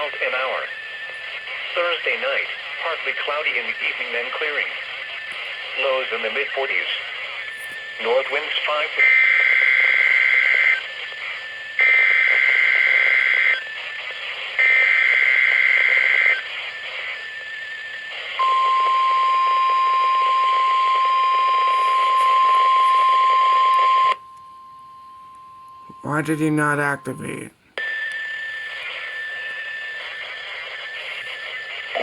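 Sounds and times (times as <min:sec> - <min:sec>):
radio hiss: 0:00.0 - 0:18.4, 0:21.3 - 0:23.3, 0:28.5 - 0:32.0
steady warning alarm tone: 0:00.0 - 0:32.0.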